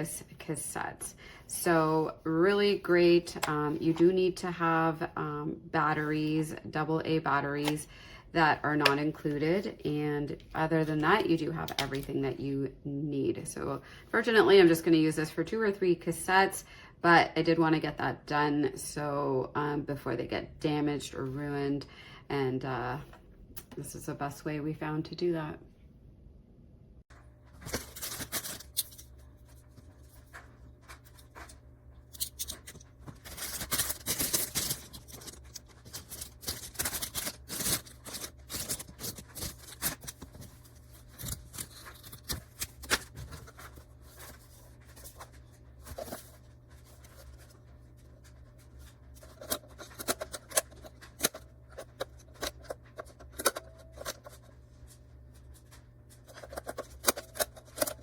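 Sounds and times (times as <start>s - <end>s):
low steady hum: 0.0s - 58.0s
handling clicks and scrapes: 27.6s - 54.5s, 56.2s - 58.0s.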